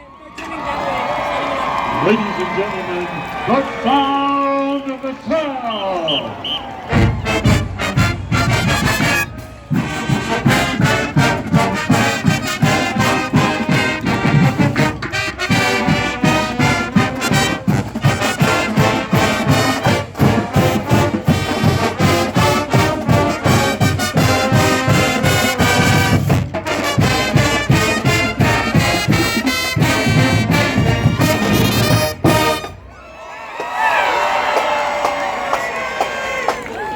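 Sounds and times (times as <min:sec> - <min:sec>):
marching band playing: 0:03.3 - 0:33.0
drumline beat: 0:06.3 - 0:32.9.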